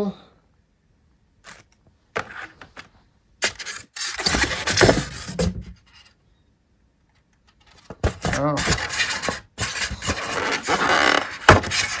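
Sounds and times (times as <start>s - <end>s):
rummaging through styrofoam packing: 3.5s - 5.7s, 7.9s - 12.0s.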